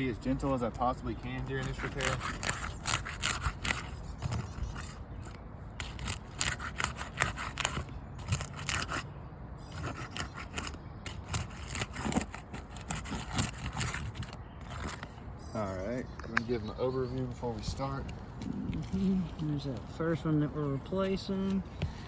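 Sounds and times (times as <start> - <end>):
scraping and crackling shingles: 0.5 - 9.0, 9.7 - 15.2.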